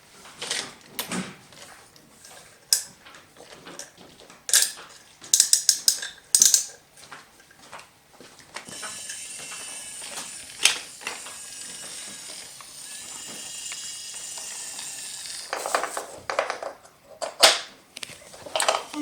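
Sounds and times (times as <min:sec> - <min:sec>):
toy pieces clattering: 0:04.5 - 0:06.8, 0:08.7 - 0:17.6
toy train motor whine: 0:08.6 - 0:16.2.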